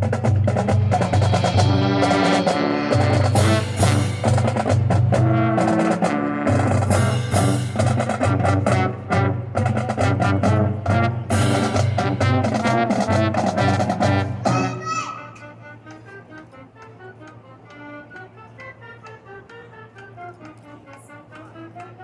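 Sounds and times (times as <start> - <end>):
drumline rapid percussion: 0.0 - 14.9
brass holding low notes: 0.0 - 22.0.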